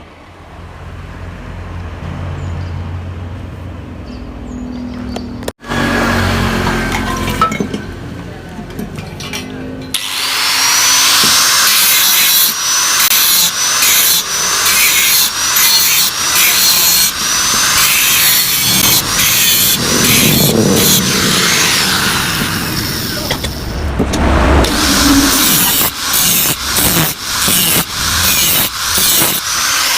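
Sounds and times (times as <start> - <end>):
power tool grinding steel: 9.9 - 23.8, 24.6 - 29.9.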